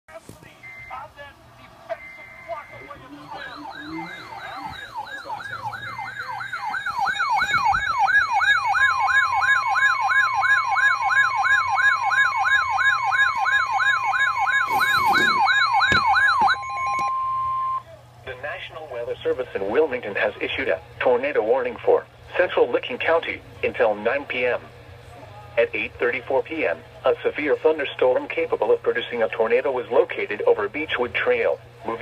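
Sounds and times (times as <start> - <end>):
steady alarm tone: 1.9 - 17.8
sweeping siren-like alarm tone: 1.9 - 17.8.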